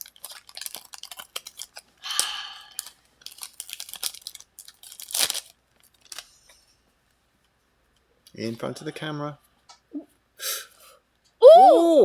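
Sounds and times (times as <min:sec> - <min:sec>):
foil wrapper crinkling: 0:00.0 - 0:06.7.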